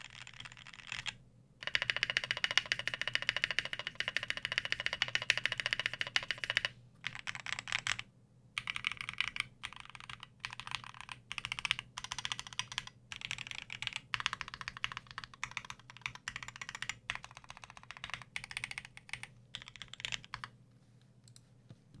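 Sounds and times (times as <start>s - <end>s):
fast typing on mechanical keyboard: 0.0s - 20.5s.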